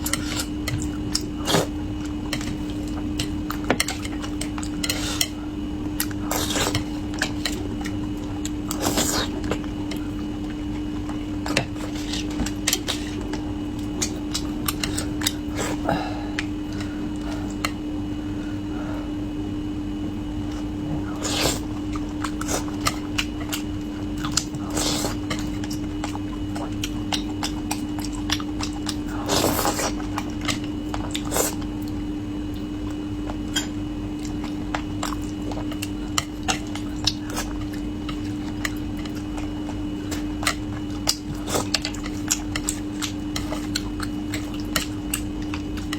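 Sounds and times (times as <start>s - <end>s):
person chewing and biting: 21.1s - 33.5s.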